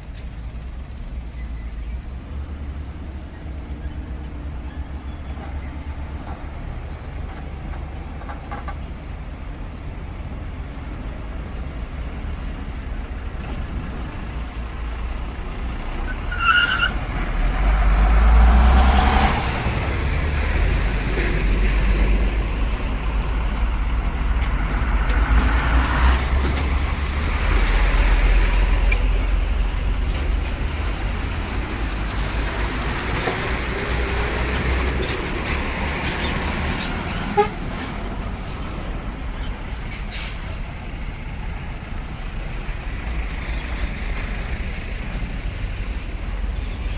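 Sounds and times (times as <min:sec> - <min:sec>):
brief high squeal: 0:01.2 - 0:05.8
heavy vehicles passing: 0:02.4 - 0:46.9.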